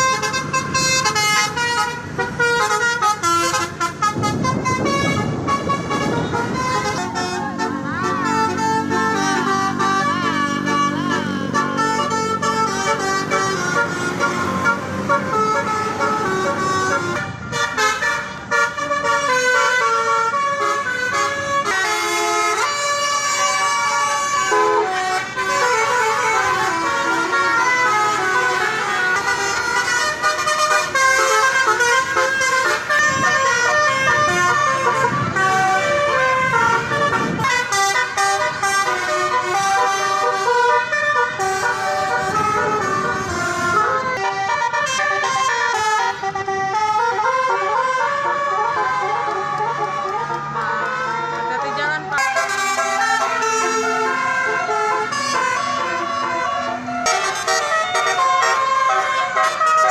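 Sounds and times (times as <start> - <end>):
bus horns playing a melody: 0.0 - 59.9.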